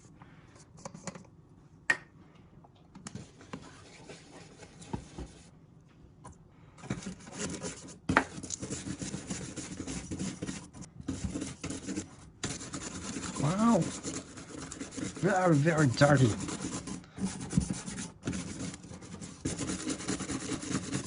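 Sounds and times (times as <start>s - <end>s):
scratchy scrubbing on metal: 7.2s - 21.0s.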